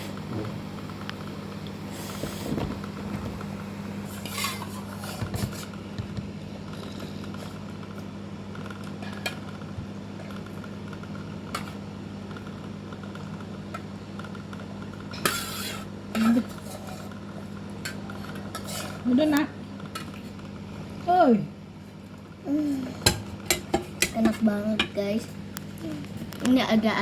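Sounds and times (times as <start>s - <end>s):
steady low hum: 0.0s - 27.0s
utensils clinking against bowl: 23.0s - 25.0s.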